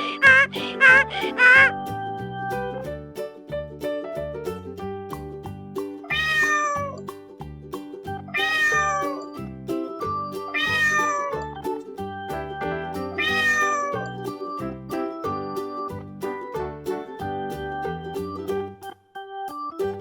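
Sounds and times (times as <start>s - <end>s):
cat meowing: 0.0s - 1.7s, 6.1s - 7.0s, 8.3s - 9.2s, 10.5s - 11.4s, 13.2s - 14.1s
light background music: 0.0s - 20.0s.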